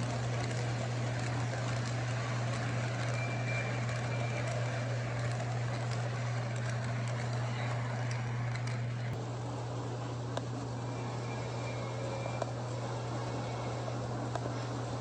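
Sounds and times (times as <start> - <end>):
model train rumbling on track: 0.0 - 9.2.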